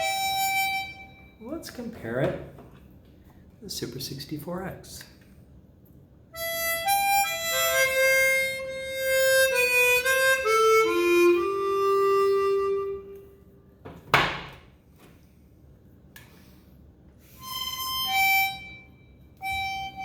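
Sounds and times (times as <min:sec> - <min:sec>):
harmonica playing held notes: 0:00.0 - 0:01.4, 0:06.4 - 0:13.5, 0:17.2 - 0:20.0.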